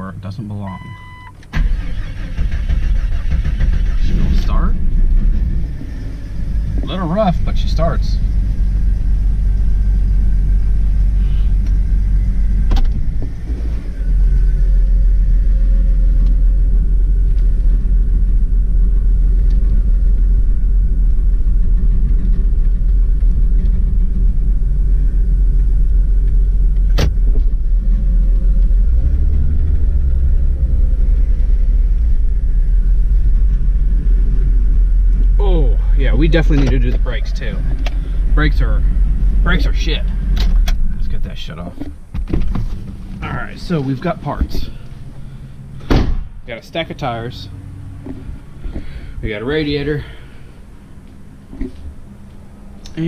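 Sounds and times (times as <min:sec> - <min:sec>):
engine rumbling: 0:00.0 - 0:53.0.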